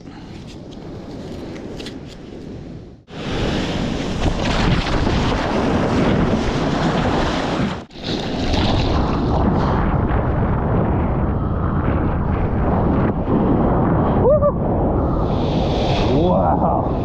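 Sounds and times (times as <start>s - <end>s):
wind buffeting microphone: 0.0s - 17.0s
ocean surf breaking: 3.1s - 9.9s.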